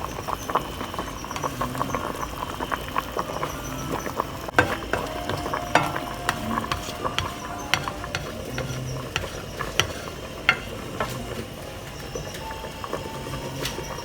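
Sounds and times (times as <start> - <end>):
utensil clinking against pot: 4.5 - 11.6
utensil stirring and scraping pot: 4.5 - 11.6.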